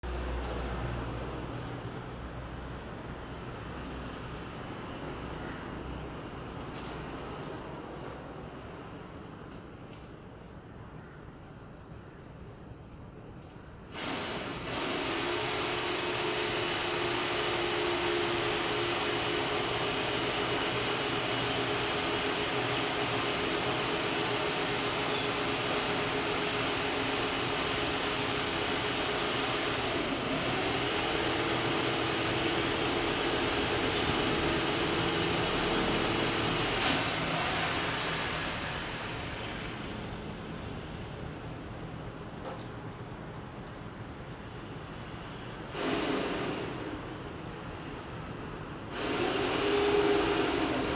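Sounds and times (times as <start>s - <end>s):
machine whirring: 14.0s - 39.9s, 48.9s - 50.9s.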